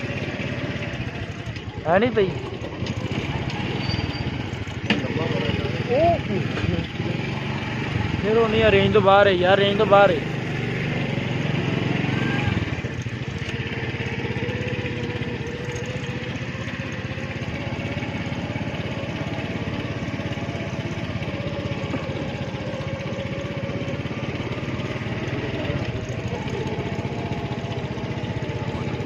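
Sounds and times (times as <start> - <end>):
small engine running: 0.0 - 29.0.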